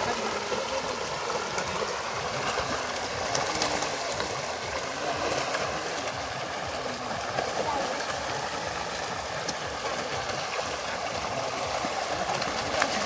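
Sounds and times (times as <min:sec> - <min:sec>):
fish thrashing and splashing water: 0:00.0 - 0:13.0.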